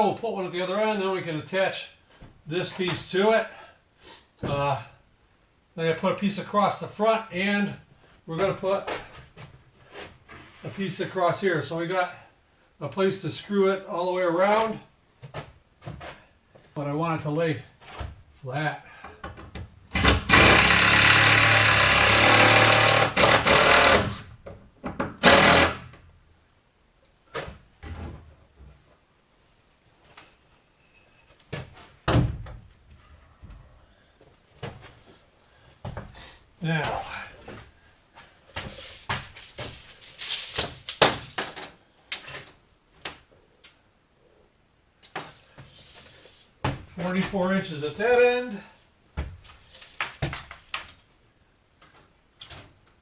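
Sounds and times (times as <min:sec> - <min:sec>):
power driver driving screw into wood: 0:19.9 - 0:24.3, 0:25.2 - 0:26.0.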